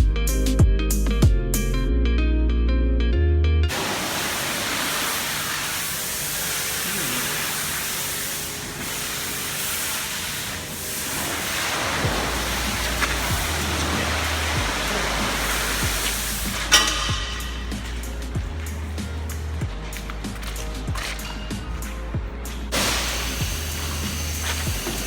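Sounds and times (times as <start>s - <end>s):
pressure washer spraying water: 3.7s - 25.0s
guitar music: 12.0s - 25.0s.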